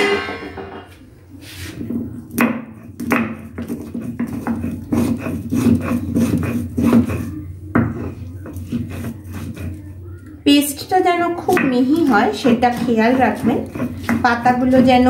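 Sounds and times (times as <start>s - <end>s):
stone grinding on stone: 3.6s - 7.3s, 11.5s - 14.9s.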